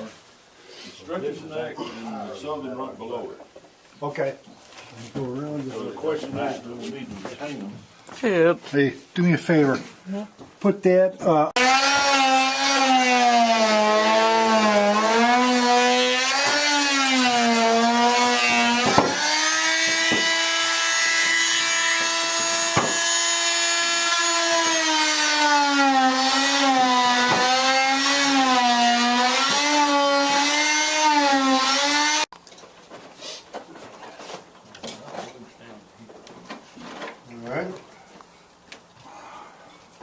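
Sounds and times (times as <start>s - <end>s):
power saw cutting wood: 11.6s - 32.3s
sharp wood cracks: 18.7s - 20.4s.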